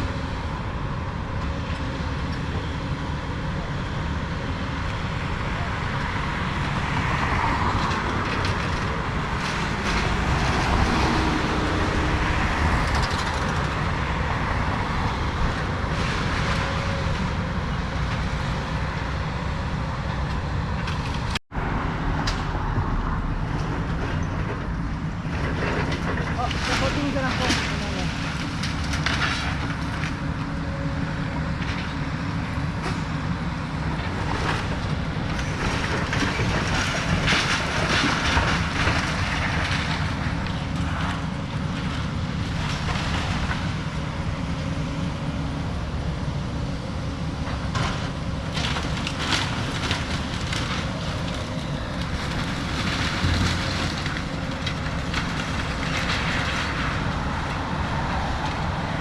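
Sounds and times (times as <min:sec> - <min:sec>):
excavator diesel engine running: 0:00.0 - 0:59.0
debris crunching and clanking: 0:22.2 - 0:30.2, 0:33.9 - 0:43.8, 0:47.5 - 0:57.6.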